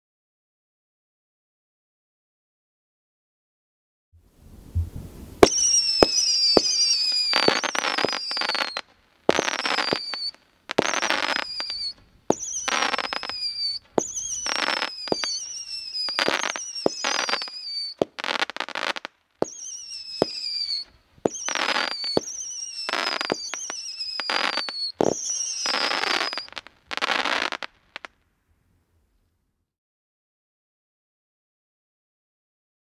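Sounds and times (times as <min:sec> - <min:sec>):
firework whistles and crackling: 0:04.6 - 0:28.2.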